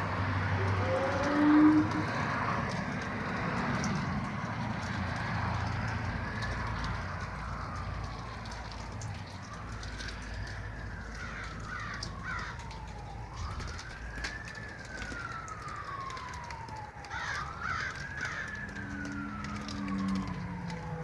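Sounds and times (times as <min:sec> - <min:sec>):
siren-like wailing tone: 0:00.0 - 0:21.0
crows cawing: 0:11.0 - 0:12.8, 0:17.0 - 0:20.2.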